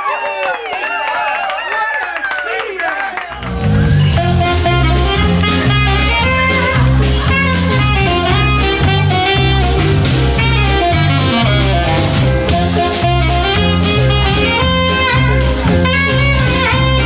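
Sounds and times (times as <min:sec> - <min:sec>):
band playing upbeat jazz: 0:03.3 - 0:17.0
steady drum beat: 0:03.3 - 0:17.0
repeating bass line: 0:03.4 - 0:17.0.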